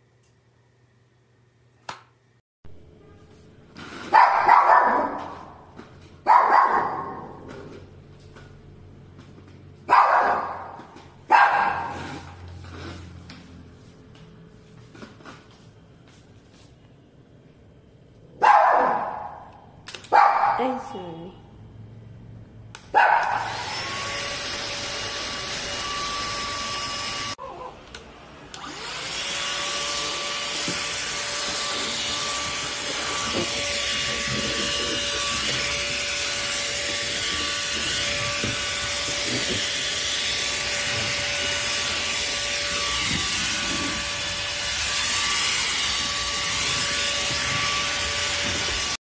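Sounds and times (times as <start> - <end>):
handheld vacuum cleaner running: 10.2 - 13.6, 23.0 - 27.4, 28.4 - 49.0.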